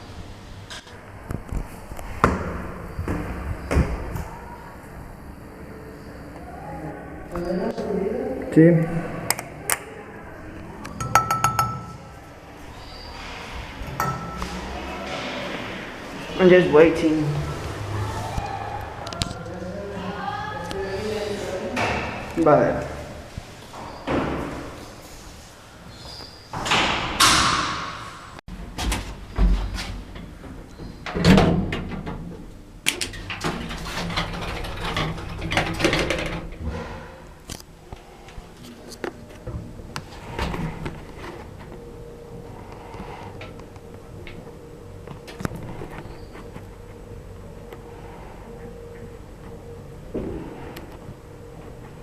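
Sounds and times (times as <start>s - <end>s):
lift doors closing with a thud: 26.5s - 30.4s, 31.0s - 37.1s
low hum of lift machinery: 26.6s - 52.0s.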